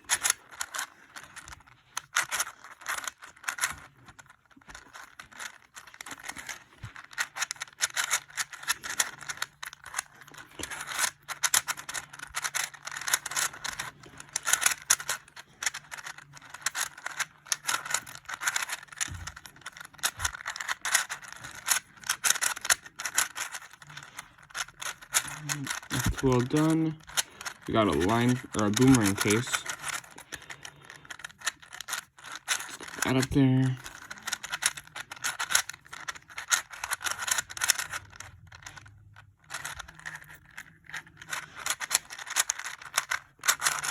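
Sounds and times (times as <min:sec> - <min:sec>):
puzzle cube clicking and rattling: 0:00.0 - 0:43.9.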